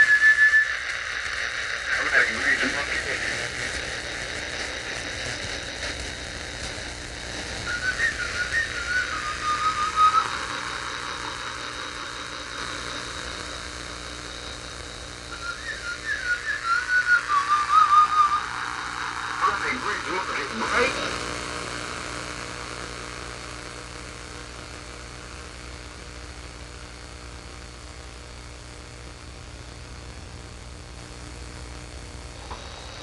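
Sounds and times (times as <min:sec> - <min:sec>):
person whistling: 0:00.0 - 0:00.7, 0:07.7 - 0:10.6, 0:15.3 - 0:18.5
steady background hiss: 0:00.0 - 0:33.0.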